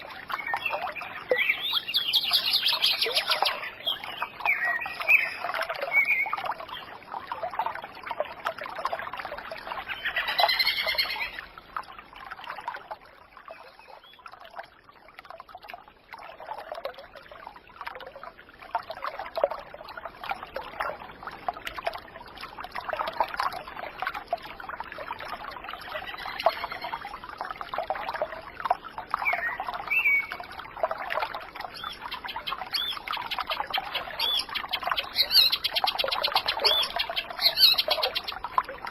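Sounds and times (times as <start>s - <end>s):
trickle of running water: 0.0s - 38.9s
birds chirping and calling: 0.4s - 6.3s, 9.9s - 11.4s, 31.7s - 38.4s.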